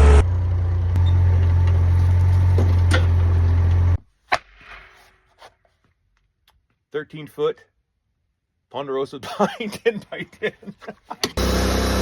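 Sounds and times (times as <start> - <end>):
sawmill engine humming: 0.0 - 4.0, 11.3 - 12.0.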